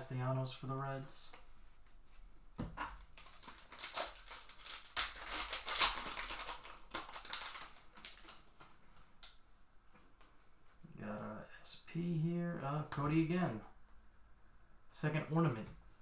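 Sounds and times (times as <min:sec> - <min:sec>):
cards and wrappers rustling: 0:02.8 - 0:09.3.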